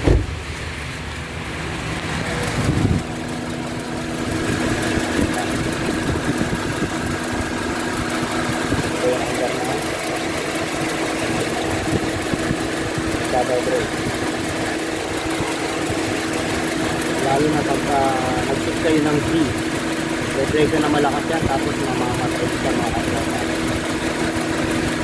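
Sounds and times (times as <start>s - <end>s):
loud low thump: 0.0s - 0.4s
car engine idling roughly: 0.0s - 25.0s.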